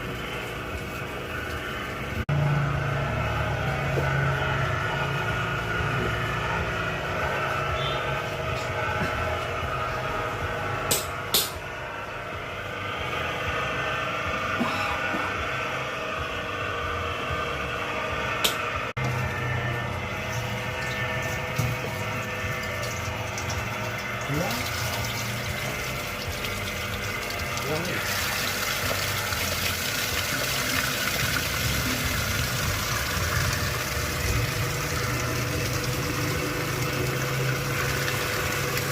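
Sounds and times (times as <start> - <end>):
mixer machine motor hum: 0.0 - 38.9.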